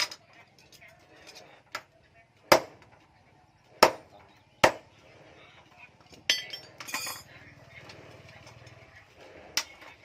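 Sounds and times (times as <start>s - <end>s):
metal pieces clinking: 6.3s - 7.3s.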